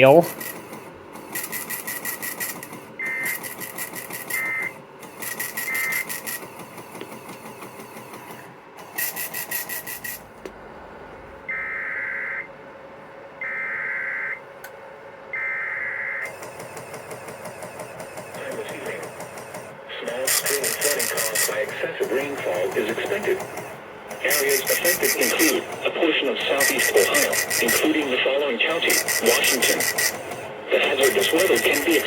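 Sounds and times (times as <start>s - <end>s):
two-tone digital data screeches: 1.3s - 6.4s, 11.5s - 12.5s, 13.4s - 14.4s, 15.4s - 16.3s, 22.2s - 32.0s
faint radio hiss: 19.8s - 32.0s.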